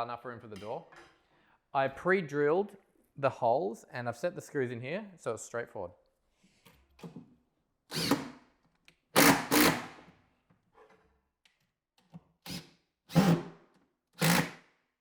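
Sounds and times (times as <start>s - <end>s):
screws driven into wood: 7.9s - 8.3s, 9.2s - 10.0s, 12.5s - 13.5s, 14.2s - 14.6s.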